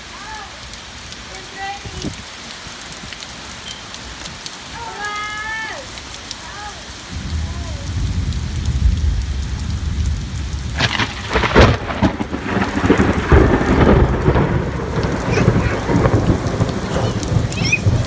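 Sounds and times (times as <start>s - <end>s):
heavy rain falling: 0.0s - 18.0s
steady low rumble: 7.1s - 18.0s
crackling patter of drops: 8.6s - 18.0s.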